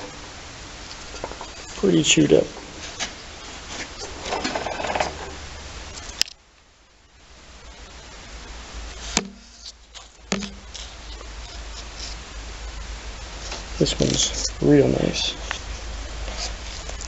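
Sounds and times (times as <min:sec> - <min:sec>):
rustling handling noise: 0:00.8 - 0:05.4, 0:13.3 - 0:17.0.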